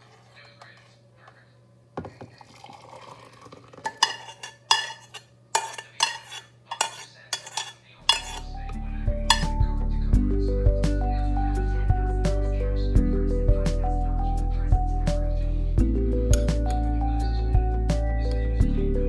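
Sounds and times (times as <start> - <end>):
spoon clinking in a cup: 3.8 - 8.6, 9.3 - 9.6, 16.4 - 16.9
soft background music: 8.0 - 19.0.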